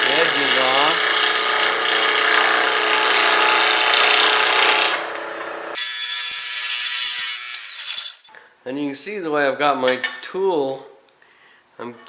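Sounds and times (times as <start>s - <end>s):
wood lathe running: 0.2s - 4.0s, 5.8s - 8.3s
gouge cutting wood on a lathe: 0.2s - 4.9s, 5.8s - 8.3s.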